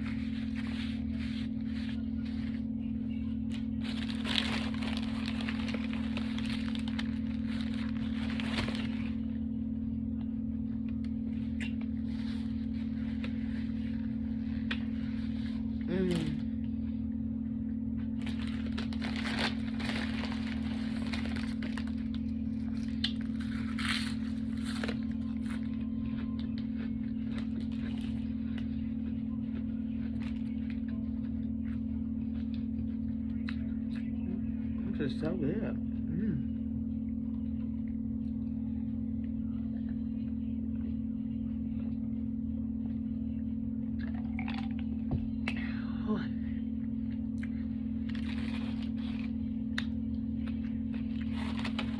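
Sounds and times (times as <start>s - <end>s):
steady low hum: 0.0s - 51.9s
crunching of eating sandwich: 3.5s - 9.4s, 18.0s - 34.0s, 44.0s - 44.8s, 47.1s - 51.9s.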